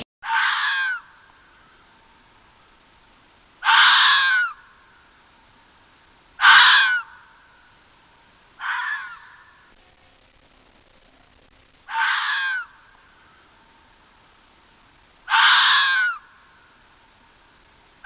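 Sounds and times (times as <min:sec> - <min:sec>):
crow cawing: 0:00.2 - 0:01.8, 0:03.6 - 0:04.8, 0:06.4 - 0:07.6, 0:08.6 - 0:09.7, 0:11.9 - 0:13.5, 0:15.3 - 0:16.7.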